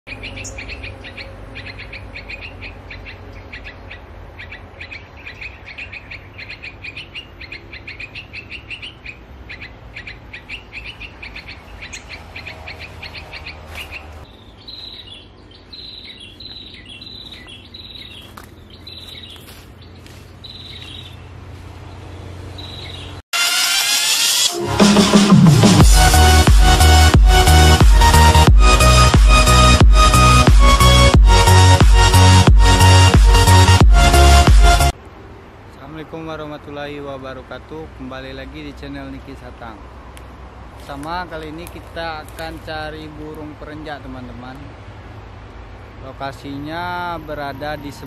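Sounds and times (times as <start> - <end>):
songbirds calling: 0.1 - 23.2.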